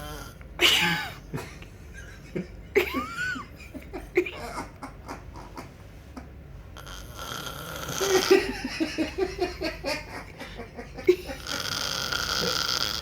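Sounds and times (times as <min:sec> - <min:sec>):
person laughing: 0:00.6 - 0:06.3, 0:08.0 - 0:11.7.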